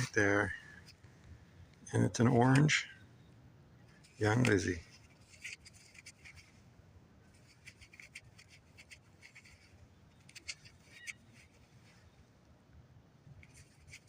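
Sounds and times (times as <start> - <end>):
faint scratching: 0.0 - 1.0, 3.9 - 6.6, 7.2 - 12.2, 13.4 - 14.0.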